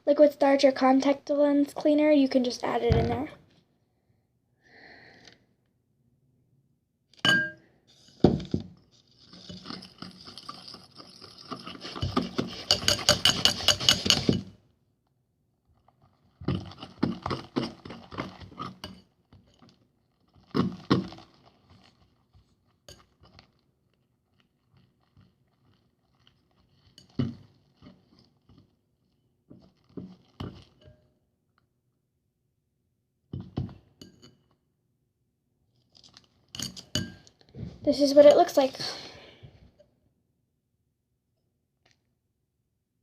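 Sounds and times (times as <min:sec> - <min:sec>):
utensil stirring in container: 0:08.9 - 0:14.5, 0:15.8 - 0:31.0.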